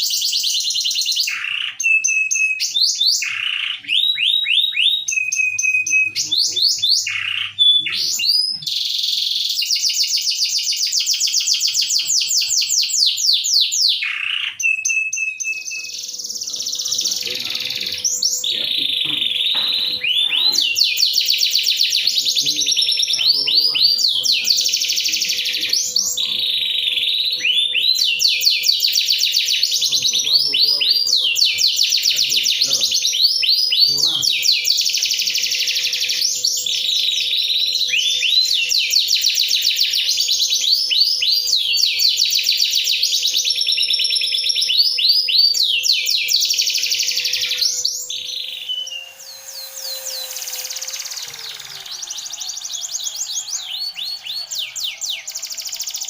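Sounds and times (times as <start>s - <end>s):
canary singing trills: 0.0s - 56.0s
faint steady hum: 46.6s - 56.0s.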